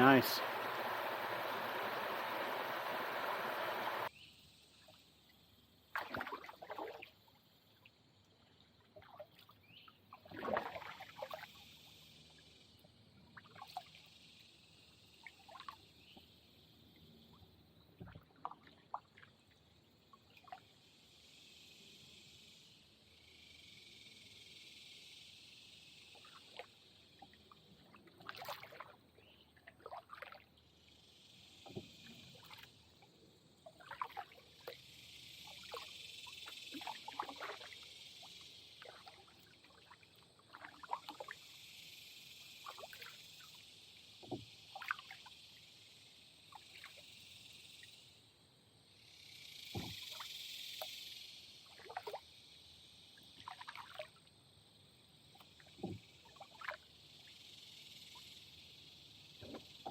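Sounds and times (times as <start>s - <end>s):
steady high hiss: 0.0s - 4.1s.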